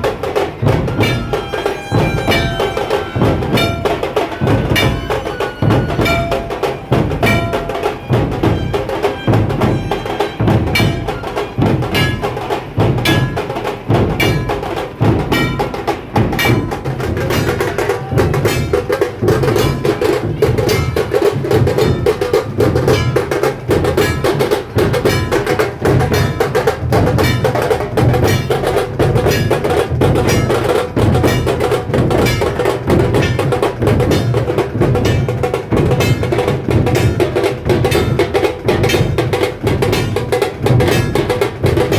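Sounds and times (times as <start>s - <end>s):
fast drum rattle: 0.0s - 41.9s
large drums beating: 0.0s - 41.9s.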